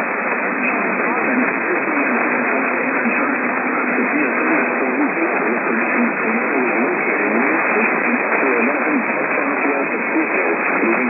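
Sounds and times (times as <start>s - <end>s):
radio static hiss: 0.0s - 11.0s
faint voice talking: 0.7s - 11.0s.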